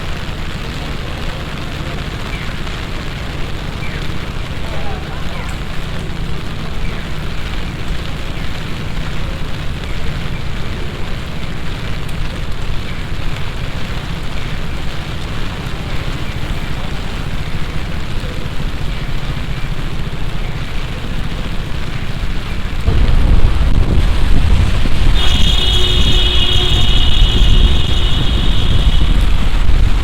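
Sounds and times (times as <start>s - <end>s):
heavy rain hissing: 0.0s - 30.0s
low rumble: 21.7s - 30.0s.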